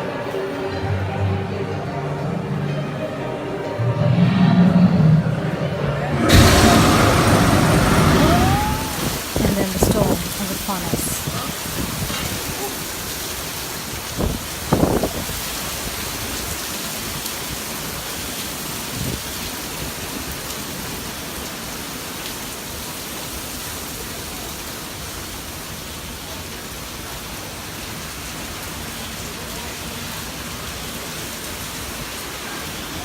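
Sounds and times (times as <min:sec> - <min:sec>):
heavy rain hissing: 0:03.3 - 0:33.0
low thump: 0:03.8 - 0:09.2.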